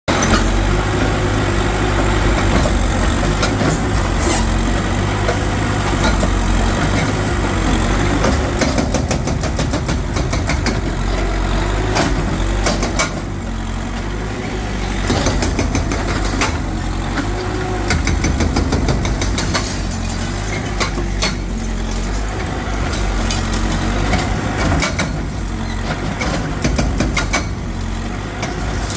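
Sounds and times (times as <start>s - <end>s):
heavy diesel engine running: 0.1s - 28.9s
sharp knocks and cracks: 8.2s - 10.9s.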